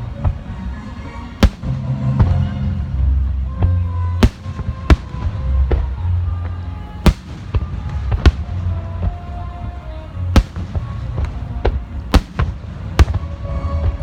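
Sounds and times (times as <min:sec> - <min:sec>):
fireworks booming: 0:00.0 - 0:14.0
low rumble: 0:00.0 - 0:14.0
small fireworks pops: 0:03.5 - 0:14.0.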